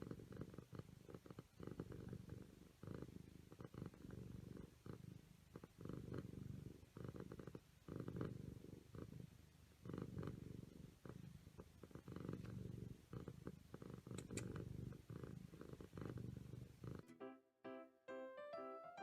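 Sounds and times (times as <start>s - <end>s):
cat purring: 0.0s - 17.0s
piano music: 17.0s - 19.0s.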